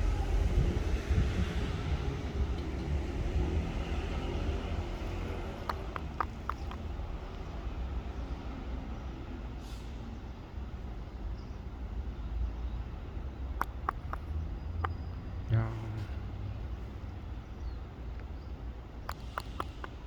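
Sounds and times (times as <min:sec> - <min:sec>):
low street rumble: 0:00.0 - 0:20.0
short sharp clicks: 0:05.0 - 0:06.9, 0:13.6 - 0:15.0, 0:19.1 - 0:20.0.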